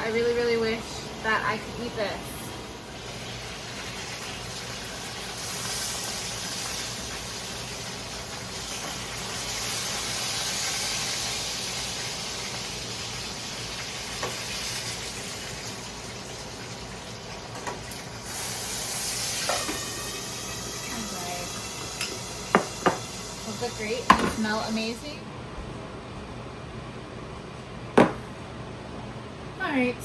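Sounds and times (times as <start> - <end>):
food sizzling in oil: 1.2 - 25.1.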